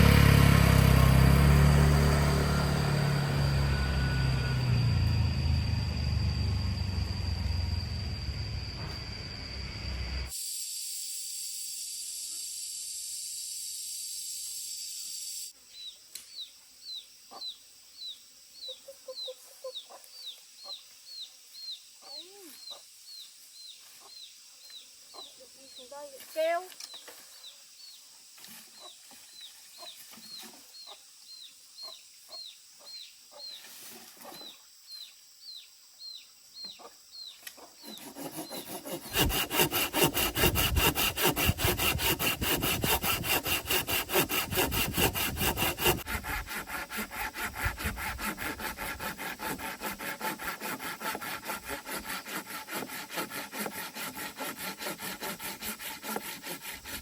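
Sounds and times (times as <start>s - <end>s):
fast rhythmic rasping strokes: 37.8s - 57.0s.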